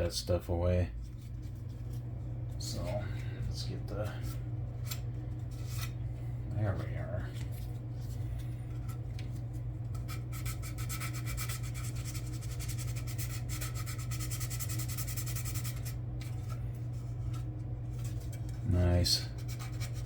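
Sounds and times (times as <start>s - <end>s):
steady low hum: 0.0s - 20.0s
sandpaper rubbing on plastic: 10.0s - 16.0s, 19.3s - 20.0s.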